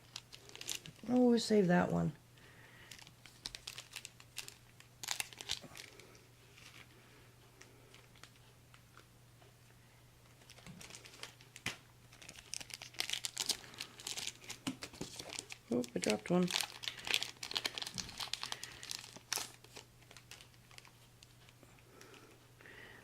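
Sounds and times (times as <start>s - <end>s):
foil wrapper crinkling and tearing: 0.0s - 1.5s, 2.8s - 6.9s, 10.4s - 21.4s.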